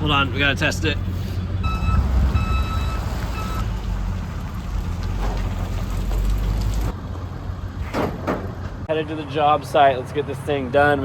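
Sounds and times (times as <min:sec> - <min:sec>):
reverse alarm beeping: 0:01.6 - 0:03.6.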